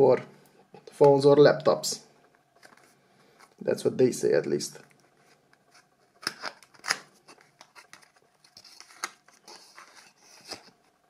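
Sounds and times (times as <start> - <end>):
packaging sliding rustle: 2.6 - 3.6, 4.8 - 11.0.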